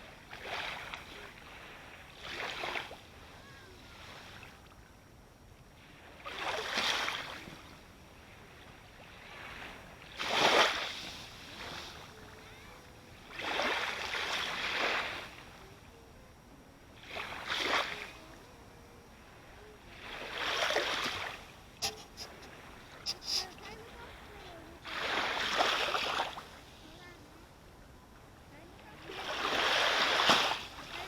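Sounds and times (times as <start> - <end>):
ocean waves breaking: 13.3 - 15.6, 19.2 - 27.2, 28.7 - 31.0.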